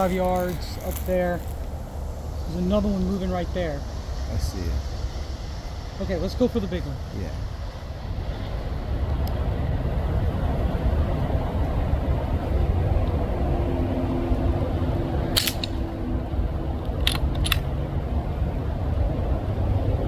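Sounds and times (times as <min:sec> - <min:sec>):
steady low rumble: 0:00.0 - 0:20.0
quick clicks: 0:15.3 - 0:15.8, 0:16.8 - 0:17.7
air rifle crack: 0:15.3 - 0:15.9.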